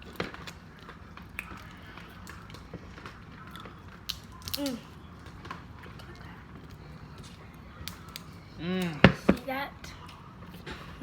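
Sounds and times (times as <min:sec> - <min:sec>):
chewing and biting seafood: 0:00.0 - 0:09.3
small clicks and crackles: 0:00.0 - 0:10.6
person humming: 0:08.6 - 0:09.0.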